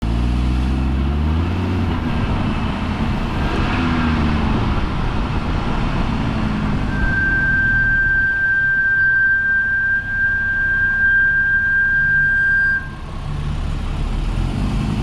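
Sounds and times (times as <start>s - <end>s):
car rolling road noise: 0.0s - 15.0s
high-pitched brake squeal: 6.8s - 13.1s.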